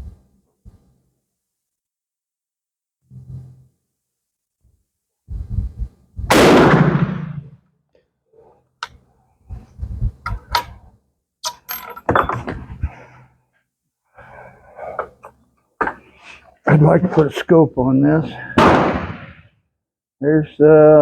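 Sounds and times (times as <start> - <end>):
rifle shot: 6.3 - 7.6, 18.6 - 19.5
clicks of rifle being handled: 8.8 - 9.0, 10.3 - 10.8, 11.4 - 12.6.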